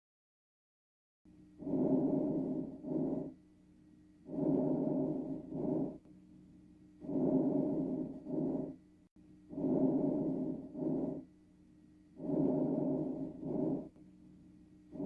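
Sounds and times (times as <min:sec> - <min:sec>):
faint steady hum: 0:01.3 - 0:15.0
lung breath sounds: 0:01.6 - 0:03.4, 0:04.2 - 0:06.0, 0:07.0 - 0:08.8, 0:09.5 - 0:11.3, 0:12.2 - 0:14.0.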